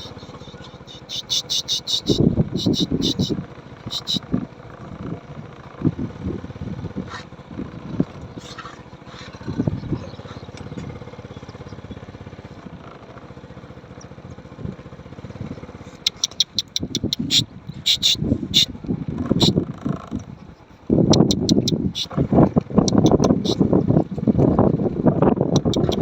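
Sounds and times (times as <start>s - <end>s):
small engine running: 0.0s - 26.0s
sharp clicks: 16.1s - 17.4s, 21.2s - 22.1s, 22.8s - 23.5s, 25.5s - 26.0s.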